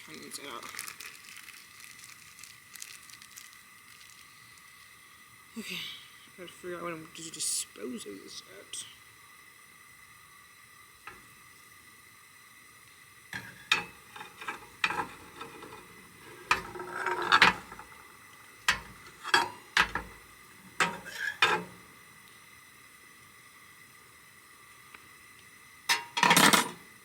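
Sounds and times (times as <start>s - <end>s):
cooking gear clinking and knocking: 13.4s - 21.9s, 25.9s - 26.9s.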